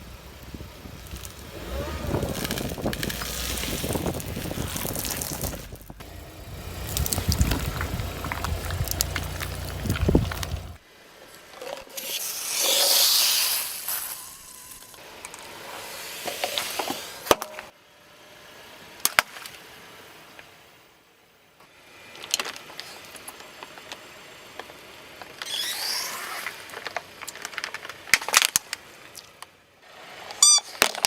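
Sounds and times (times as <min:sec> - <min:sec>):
sharp cracks: 0:00.1 - 0:10.8
tyre crushing objects: 0:00.6 - 0:10.8
loud hiss of spraying soda: 0:12.0 - 0:14.4, 0:15.6 - 0:17.3.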